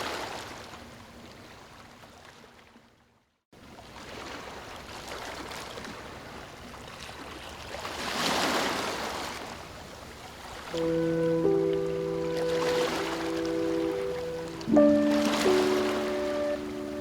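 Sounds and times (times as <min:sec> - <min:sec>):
ocean surf: 0:10.7 - 0:17.0
wave breaking: 0:10.8 - 0:17.0.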